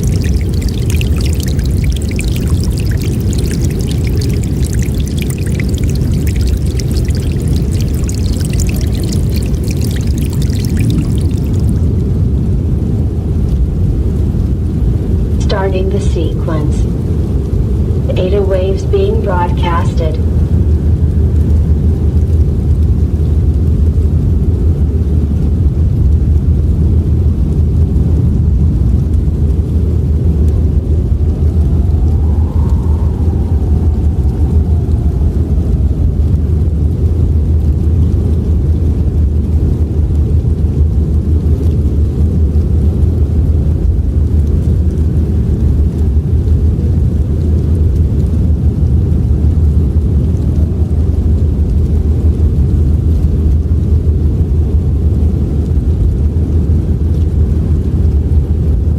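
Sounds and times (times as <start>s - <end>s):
howling blizzard wind roar: 29.8s - 38.2s
whistling wind gust: 31.0s - 37.2s.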